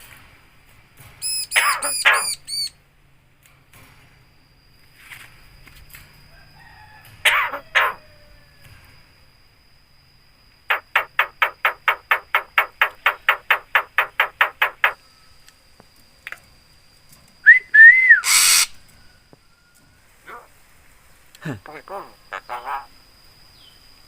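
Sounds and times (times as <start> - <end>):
myna harsh calls: 1.4 - 2.7, 7.2 - 8.1, 18.2 - 18.8, 20.2 - 20.6, 21.5 - 22.9
bird whistled notes: 17.4 - 18.8.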